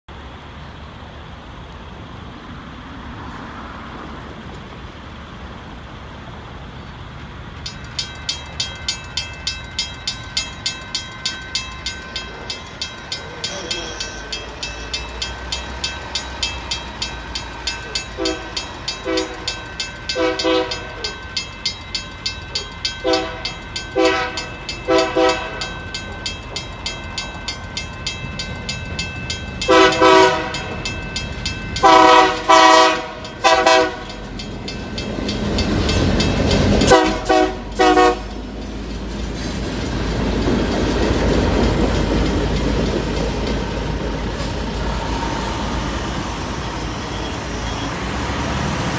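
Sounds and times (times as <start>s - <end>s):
diesel engine rumble: 0.1s - 48.9s
train wheels clicking over rail joints: 3.1s - 48.9s
locomotive air horn toots: 18.2s - 21.1s, 23.0s - 25.8s, 29.7s - 30.8s, 31.8s - 34.2s, 36.8s - 38.4s.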